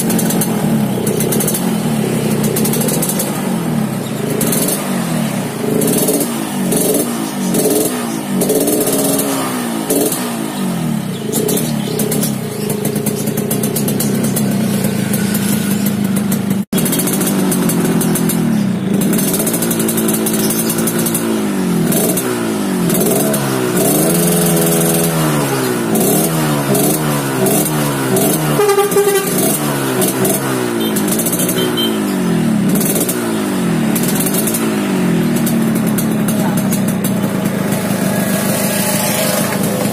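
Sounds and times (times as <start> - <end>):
motorcycle revving: 0.0 - 39.9.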